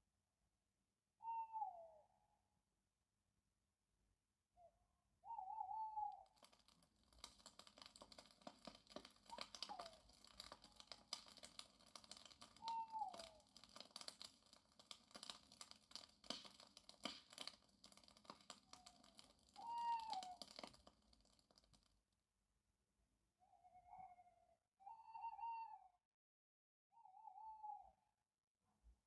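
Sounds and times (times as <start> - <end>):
animal calls falling in pitch: 5.3 - 21.0
firewood crackling and popping: 6.2 - 22.0.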